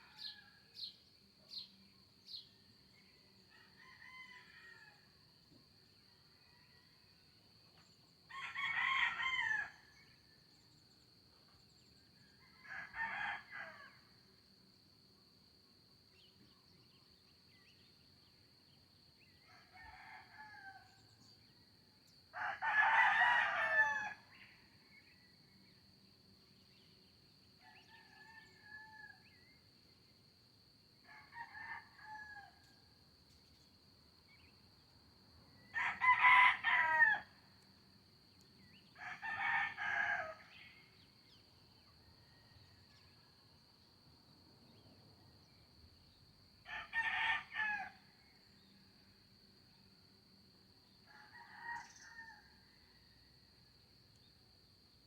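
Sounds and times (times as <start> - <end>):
roosters crowing: 8.3 - 9.8, 22.4 - 24.2, 35.7 - 37.3, 39.0 - 40.4, 46.7 - 48.0.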